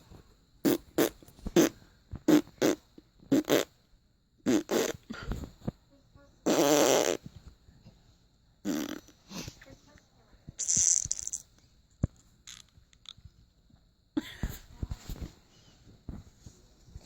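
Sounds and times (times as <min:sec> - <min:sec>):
person imitating fart noises: 0:00.6 - 0:03.8, 0:04.4 - 0:05.6, 0:06.4 - 0:07.4, 0:08.6 - 0:09.2, 0:10.6 - 0:11.4, 0:12.5 - 0:12.7.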